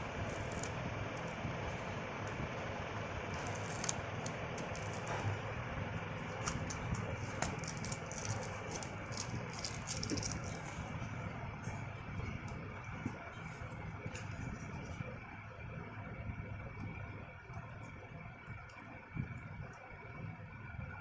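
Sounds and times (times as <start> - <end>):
steady low hum: 0.0 - 21.0
handling clicks and rustles: 3.3 - 5.4, 6.0 - 11.3.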